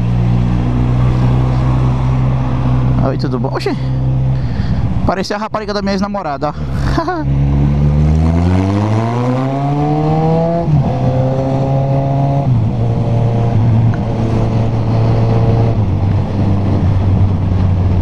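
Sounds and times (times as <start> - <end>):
motorcycle engine shifting gears: 7.3 - 18.0.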